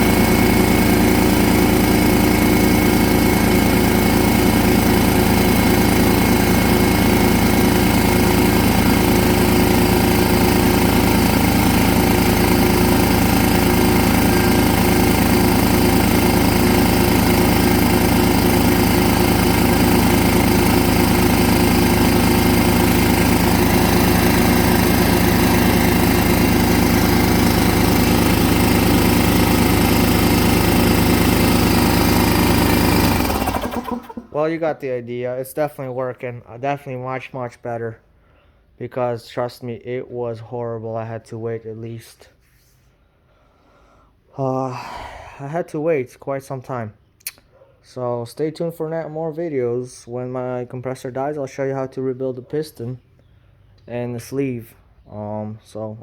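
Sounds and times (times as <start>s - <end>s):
air compressor running: 0.0s - 34.4s.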